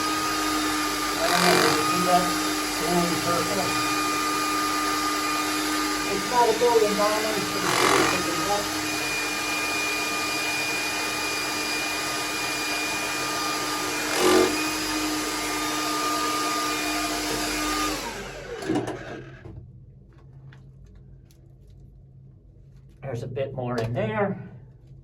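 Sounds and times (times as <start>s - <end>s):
demolition hammer on rock: 7.6s - 8.3s, 14.1s - 14.7s.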